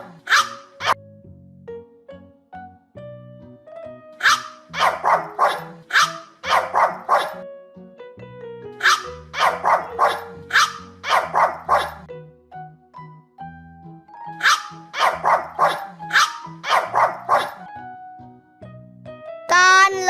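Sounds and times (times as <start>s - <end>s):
puppy barking: 0.0s - 1.0s, 4.2s - 7.4s, 8.8s - 12.1s, 14.4s - 17.6s
light background music: 0.0s - 20.0s.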